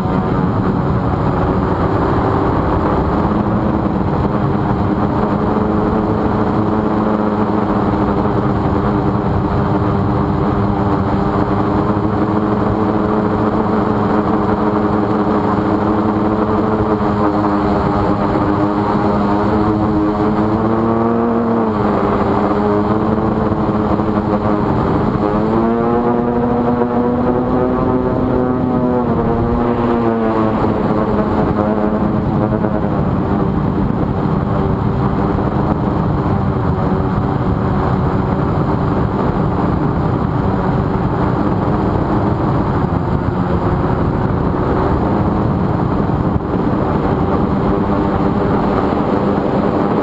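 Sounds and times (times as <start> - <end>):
quadcopter electric buzz: 0.0 - 50.0.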